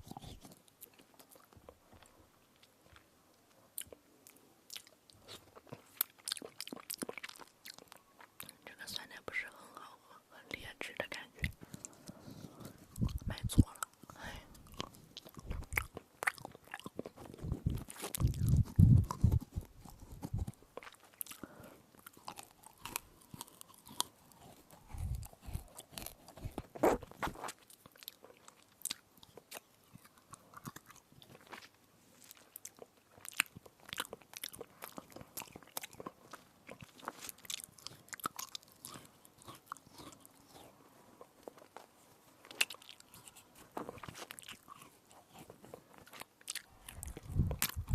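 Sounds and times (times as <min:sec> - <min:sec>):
crunching and chewing: 0:00.0 - 0:09.1, 0:11.1 - 0:47.9
low thuds of biting: 0:14.6 - 0:20.6, 0:24.0 - 0:27.5, 0:46.8 - 0:47.9.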